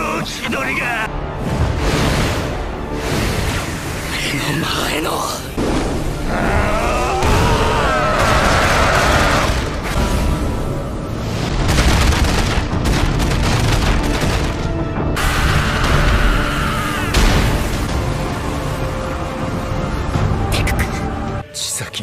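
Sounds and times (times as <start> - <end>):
dramatic soundtrack music: 0.0 - 22.0
rapid blasts: 7.2 - 10.6, 11.4 - 18.9.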